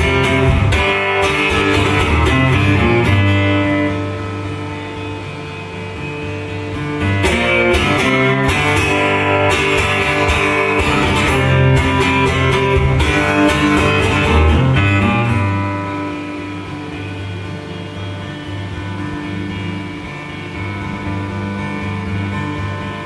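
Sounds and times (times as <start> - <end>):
acoustic guitar strummed hard: 0.0 - 23.0.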